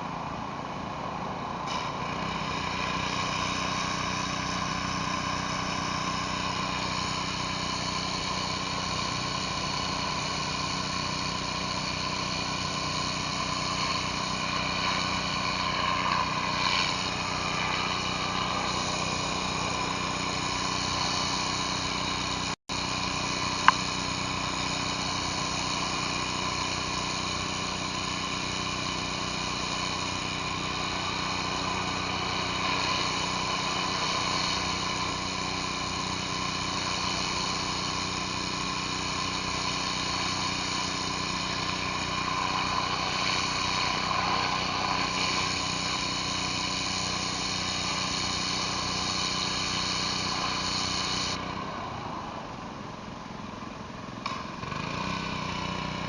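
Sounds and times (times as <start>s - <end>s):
pressure washer engine running: 0.0s - 56.0s
water hissing on concrete: 1.6s - 52.2s.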